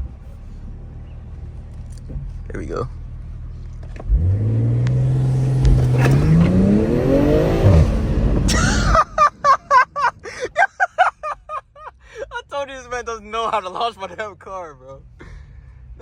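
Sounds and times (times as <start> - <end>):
car engine revving: 3.8 - 9.2
voices and laughter: 8.5 - 12.6.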